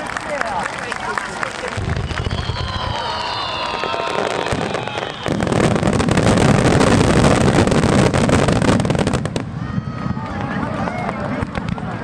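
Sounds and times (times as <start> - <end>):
firework bangs and crackling: 0.2 - 12.0
falling firework whistles: 1.8 - 7.0.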